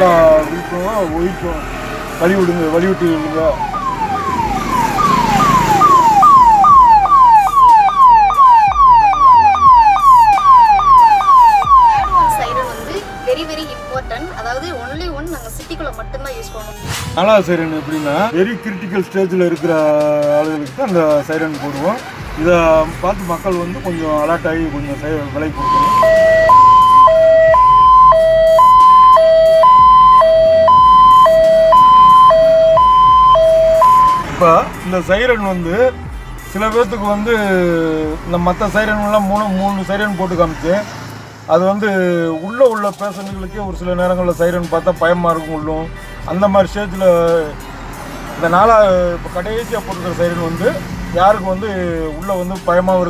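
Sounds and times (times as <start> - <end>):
ambulance siren sweeping: 0.0 - 15.0, 25.5 - 34.8.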